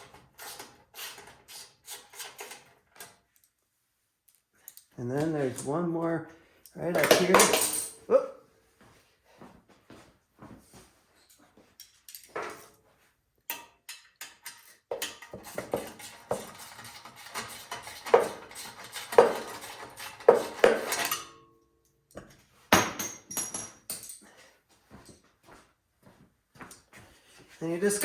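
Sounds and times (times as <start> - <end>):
metal tools clinking: 6.9 - 8.1, 11.2 - 12.8, 13.5 - 21.4, 22.8 - 24.4, 27.7 - 28.0.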